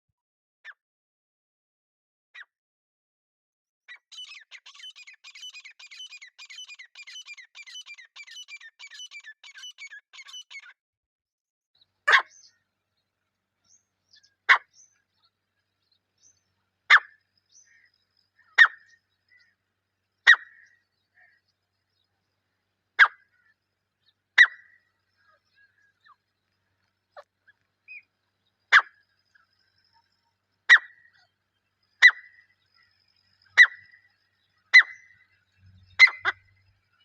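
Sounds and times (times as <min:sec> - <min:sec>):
bird sharp single calls: 0:03.9 - 0:10.7, 0:16.9 - 0:19.5, 0:20.2 - 0:21.4, 0:23.0 - 0:23.5, 0:24.4 - 0:26.2, 0:28.7 - 0:29.0, 0:30.7 - 0:31.3, 0:32.0 - 0:32.9, 0:33.5 - 0:34.1, 0:34.7 - 0:36.6
bird chirping rapidly: 0:03.9 - 0:10.8, 0:13.7 - 0:19.6, 0:20.2 - 0:21.4, 0:23.0 - 0:26.3, 0:27.8 - 0:37.0.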